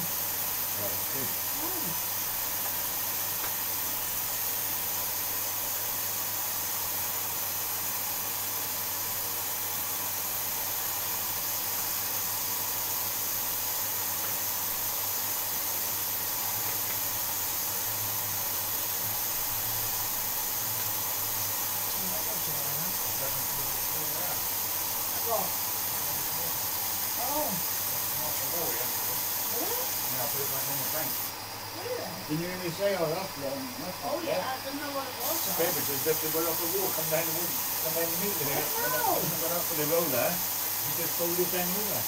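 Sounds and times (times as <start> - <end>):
steady hiss: 0.0 - 42.0.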